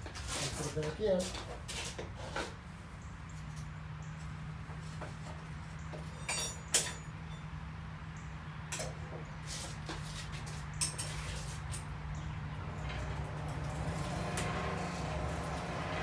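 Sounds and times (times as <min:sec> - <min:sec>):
metal tongs clinking on iron: 0:06.2 - 0:07.1.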